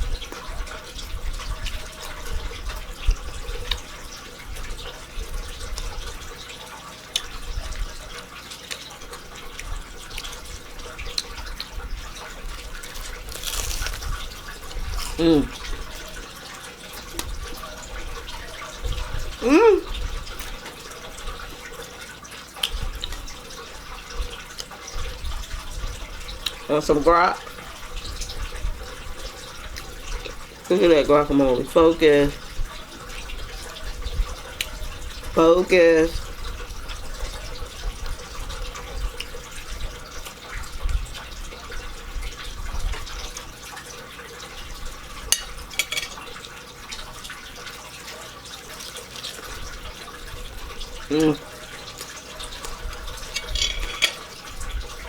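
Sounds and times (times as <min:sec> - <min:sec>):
person chewing: 0:09.5 - 0:16.3, 0:17.0 - 0:20.7, 0:47.0 - 0:54.6
crisp crunches: 0:12.8 - 0:15.2.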